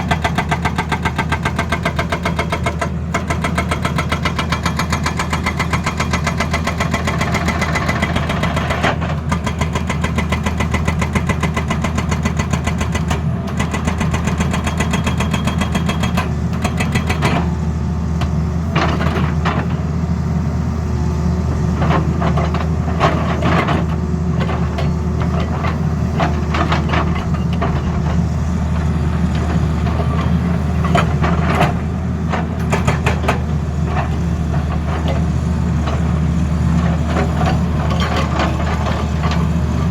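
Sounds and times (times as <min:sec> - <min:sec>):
diesel engine running: 0:15.6 - 0:39.9.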